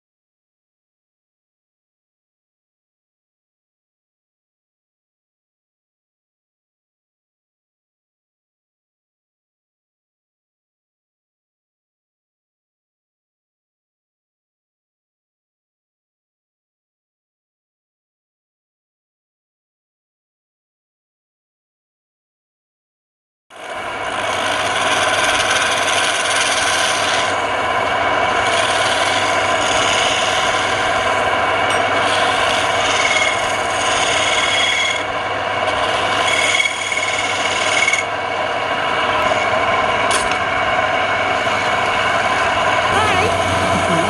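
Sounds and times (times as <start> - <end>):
tool rubbing spinning wood: 23.6 - 39.5, 41.3 - 44.0
wood lathe running: 23.6 - 44.0.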